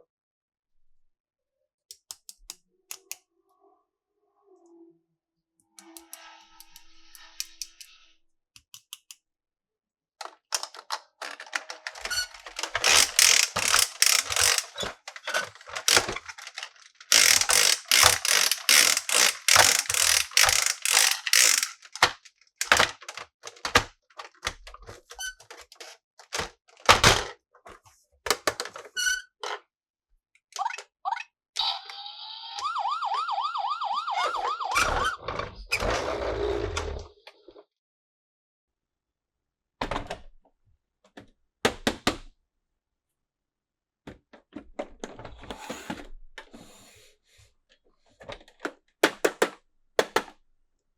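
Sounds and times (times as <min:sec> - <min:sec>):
toy electronic siren: 0:31.6 - 0:35.3.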